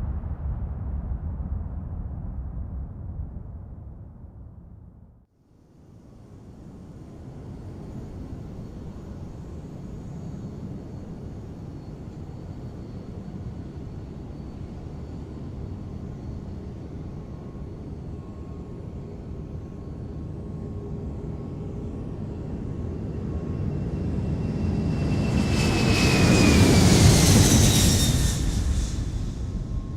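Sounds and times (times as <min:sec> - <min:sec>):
jet engine whine: 0:05.9 - 0:29.9
jet aircraft rumble: 0:14.4 - 0:29.9.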